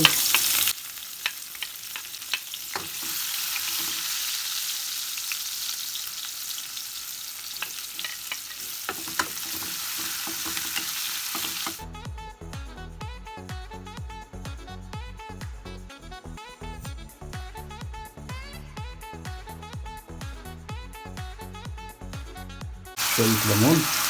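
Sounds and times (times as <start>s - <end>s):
utensil clicking in pan: 0.0s - 4.4s, 7.3s - 11.8s
garlic and onion sizzling in oil: 0.0s - 11.8s, 23.0s - 24.0s
background music: 8.7s - 24.0s.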